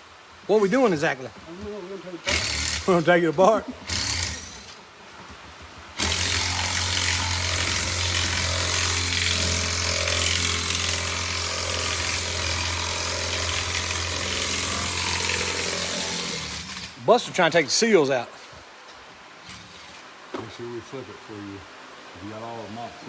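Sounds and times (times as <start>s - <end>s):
power tool humming and hissing: 2.2s - 3.1s, 3.8s - 4.8s, 6.0s - 17.0s.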